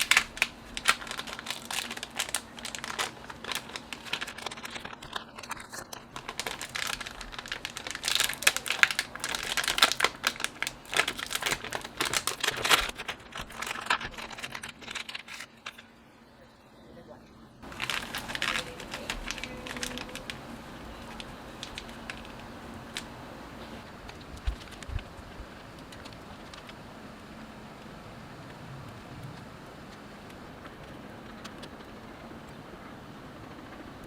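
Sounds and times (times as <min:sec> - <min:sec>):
plastic packaging crinkling: 0:00.0 - 0:16.0, 0:17.6 - 0:26.9.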